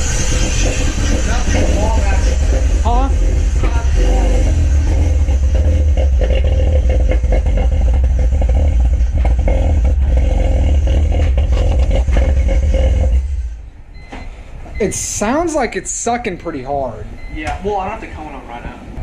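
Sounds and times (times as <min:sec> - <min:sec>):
car engine idling loudly: 0:00.0 - 0:13.7
intake sucking air: 0:00.0 - 0:15.3.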